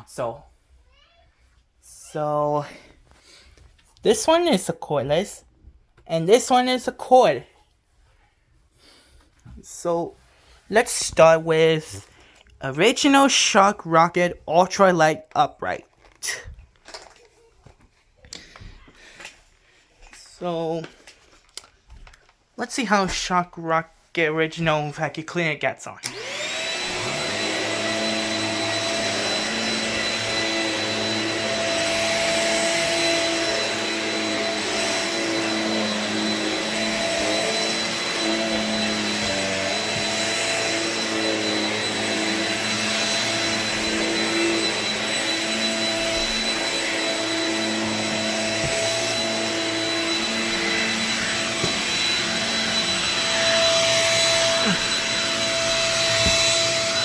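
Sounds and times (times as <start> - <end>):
stick vacuum running with high whine: 26.0 - 57.0.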